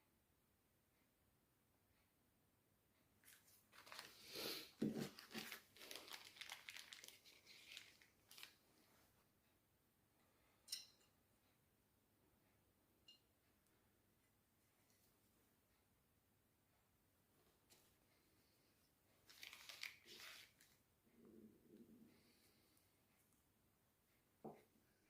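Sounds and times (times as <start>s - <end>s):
rustling and scraping: 3.2s - 9.0s, 19.2s - 20.8s.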